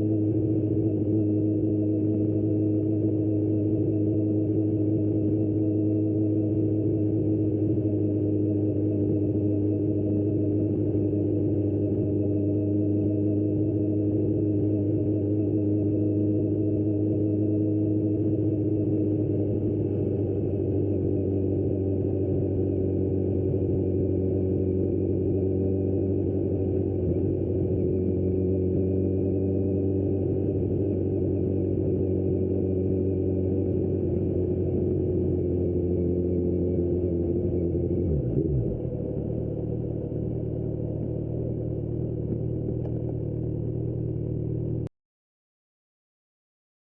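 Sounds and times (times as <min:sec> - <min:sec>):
motorcycle engine running steadily: 0:00.0 - 0:44.9.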